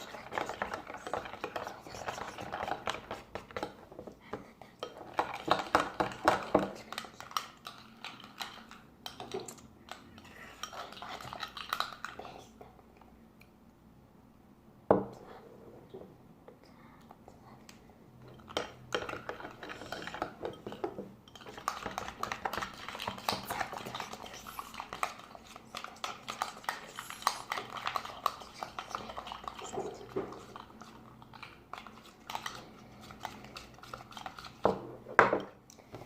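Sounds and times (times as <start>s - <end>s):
spoon scraping in a bowl: 18.5s - 34.7s.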